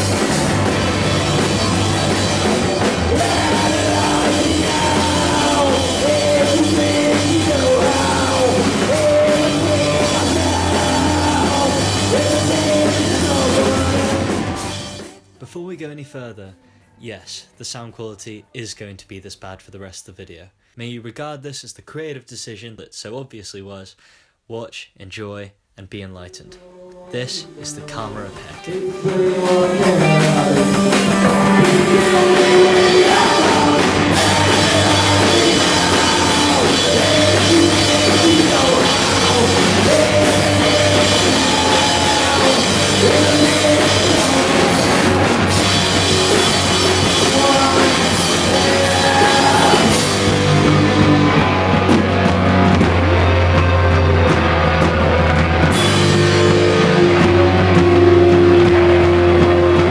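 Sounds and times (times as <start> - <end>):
grunge band playing live: 0.0 - 15.2, 27.5 - 59.9.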